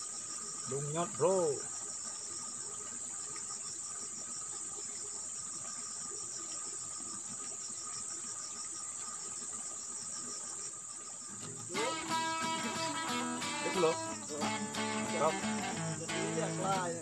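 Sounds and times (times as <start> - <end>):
crickets pulsing chirp: 0.0 - 17.0
insect high trill: 0.0 - 17.0
guitar music: 11.5 - 17.0.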